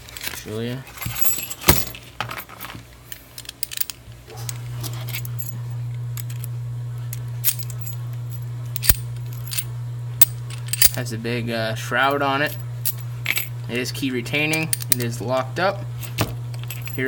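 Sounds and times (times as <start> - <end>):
steady low hum: 3.0 - 17.0
padlock and key clicking: 8.8 - 9.6, 14.5 - 15.1.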